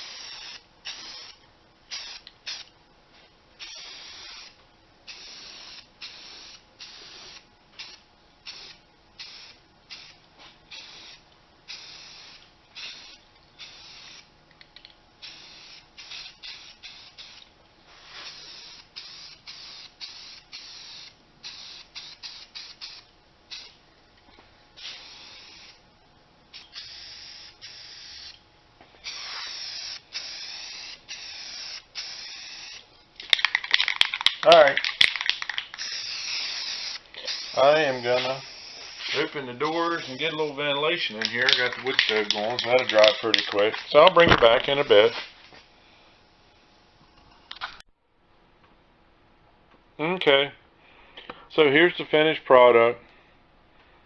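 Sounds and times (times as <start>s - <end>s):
spray paint can hissing: 0.0s - 2.7s, 3.6s - 14.3s, 15.2s - 23.8s, 24.8s - 25.8s, 26.5s - 28.4s, 29.0s - 44.1s.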